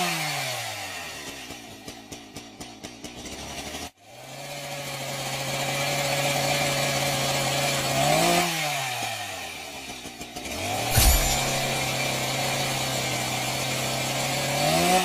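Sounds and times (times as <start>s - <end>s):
chainsaw engine revving: 5.0s - 15.0s
sharp thump: 10.9s - 12.8s.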